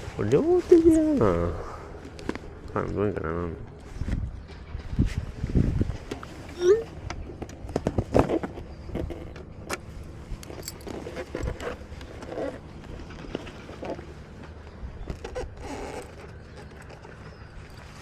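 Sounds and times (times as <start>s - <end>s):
small gear clicking and rattling: 10.4s - 12.5s.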